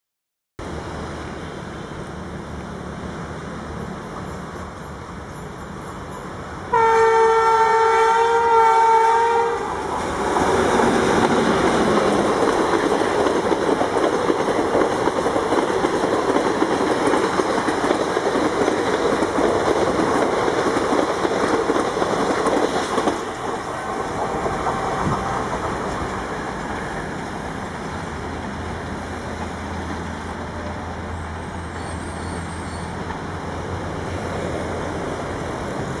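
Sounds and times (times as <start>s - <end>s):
train rushing past: 0.6s - 36.0s
locomotive horn blast: 6.7s - 9.8s.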